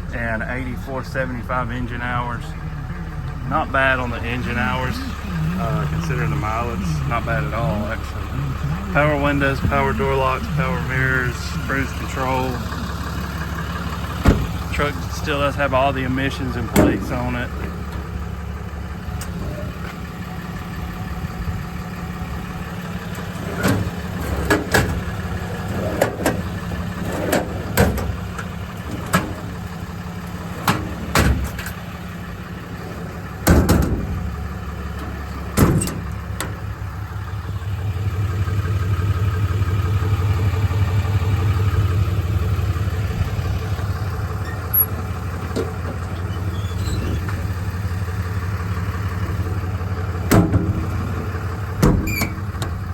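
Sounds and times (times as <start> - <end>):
diesel engine idling: 0.0 - 52.9
sharp knocks and clunks: 14.0 - 15.1, 16.7 - 18.1, 23.2 - 29.8, 30.5 - 31.9, 33.0 - 36.7, 43.7 - 47.8, 50.2 - 52.9.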